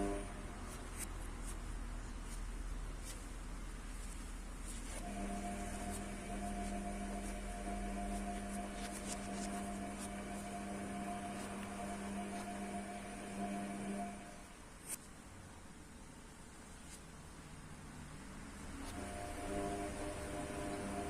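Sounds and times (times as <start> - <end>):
machine hum: 0.0 - 14.9, 17.6 - 21.0.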